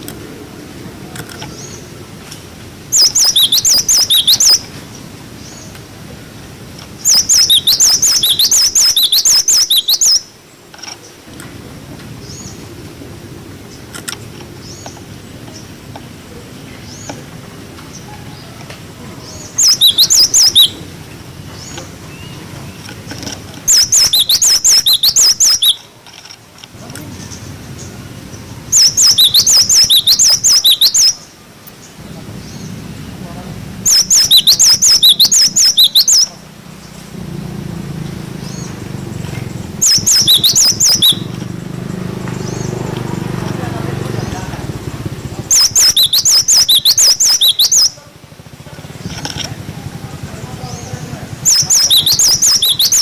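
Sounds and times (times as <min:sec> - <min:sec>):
low steady rumble: 0:00.0 - 0:53.0
tit giving rapid high calls: 0:02.8 - 0:04.7, 0:06.9 - 0:10.4, 0:19.2 - 0:22.5, 0:23.6 - 0:25.9, 0:27.3 - 0:53.0.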